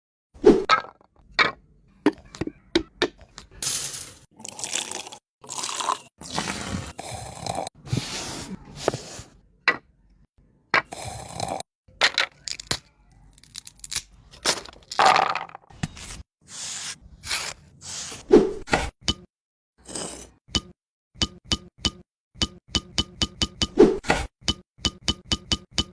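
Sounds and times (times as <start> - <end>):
building work scraping: 6.2 - 9.3
knocking: 20.6 - 23.8, 24.5 - 25.9.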